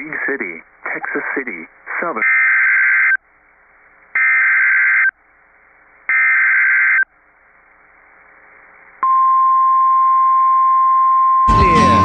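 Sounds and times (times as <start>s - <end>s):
warbling digital data tones: 4.2s - 5.1s, 6.1s - 7.1s.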